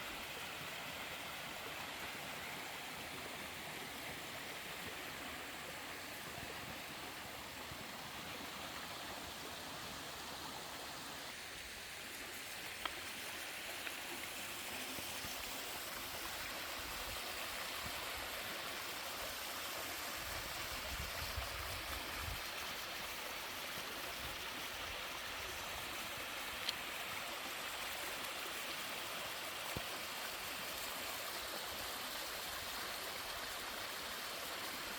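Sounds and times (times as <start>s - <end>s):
faint ticks: 12.7s - 13.1s.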